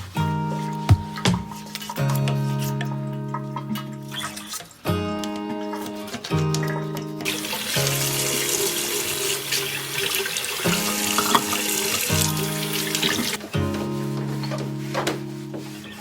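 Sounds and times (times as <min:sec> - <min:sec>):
background music: 0:00.0 - 0:16.0
tap water running into sink: 0:07.2 - 0:13.5.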